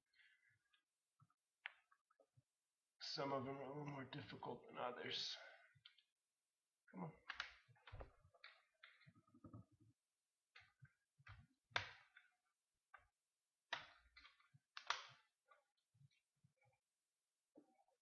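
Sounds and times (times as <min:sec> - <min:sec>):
plastic clips snapping: 0:13.7 - 0:15.3.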